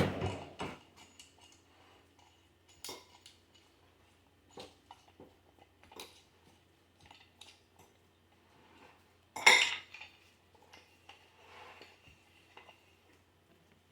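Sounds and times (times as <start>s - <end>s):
loud metallic clank: 0.0s - 0.8s.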